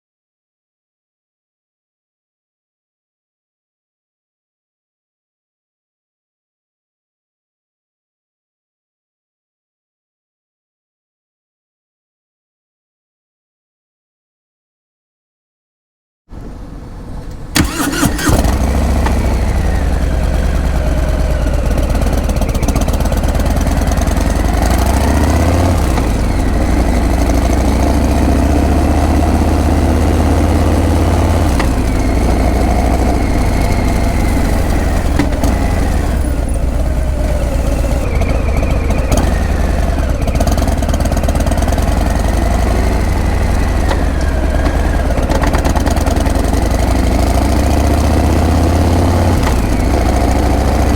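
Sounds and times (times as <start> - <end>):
motorcycle starter turning: 17.3 - 28.7, 29.6 - 42.6
motorcycle engine idling: 17.5 - 48.6.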